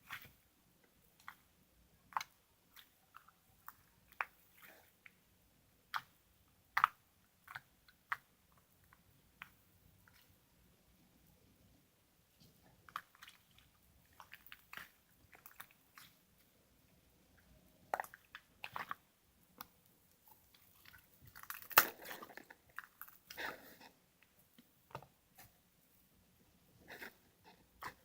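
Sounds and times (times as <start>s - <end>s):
chewing and crunching: 12.8s - 16.2s, 17.4s - 24.0s, 26.8s - 28.0s.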